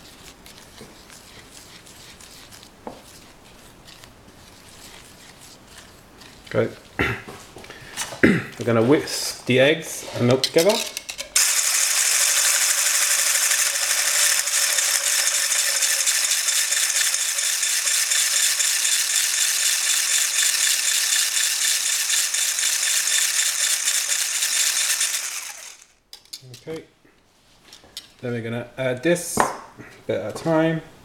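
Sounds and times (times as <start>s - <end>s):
whisk rattling against bowl: 10.4s - 25.8s.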